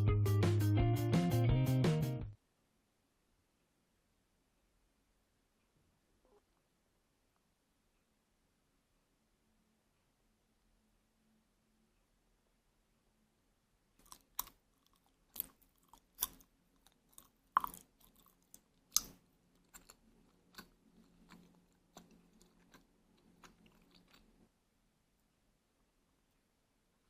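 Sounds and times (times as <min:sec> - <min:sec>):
person chewing rice cake: 0:14.0 - 0:24.5.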